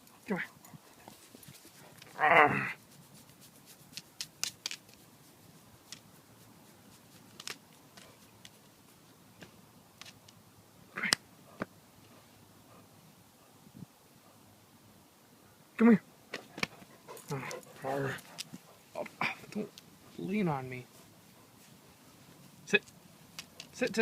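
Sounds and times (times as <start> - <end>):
dog growling: 2.1 - 2.8, 17.1 - 18.4
light clicks and taps: 22.8 - 24.0.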